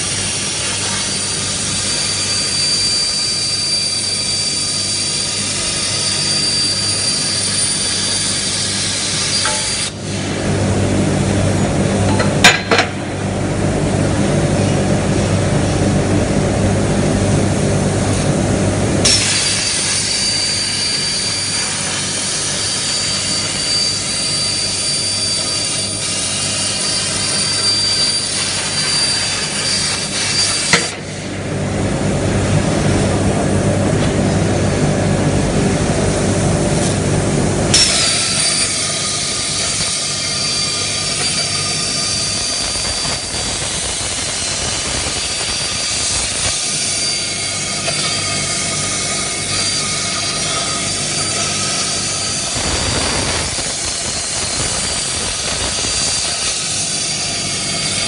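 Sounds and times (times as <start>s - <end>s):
plasma cutter hissing: 0.0s - 10.3s, 19.0s - 31.2s, 37.8s - 58.0s.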